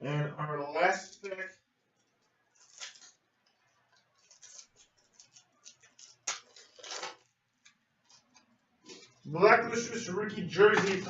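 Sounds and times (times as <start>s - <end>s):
cards rustling: 1.9s - 9.3s
card pack crackling: 2.5s - 9.2s.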